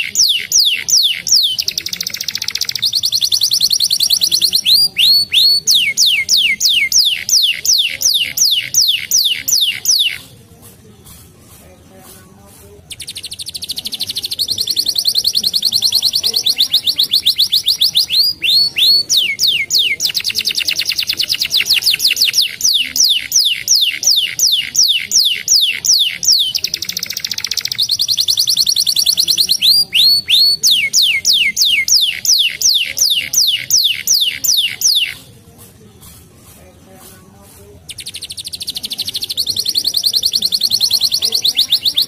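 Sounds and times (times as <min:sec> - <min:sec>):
canary singing trills: 0:00.0 - 0:42.0.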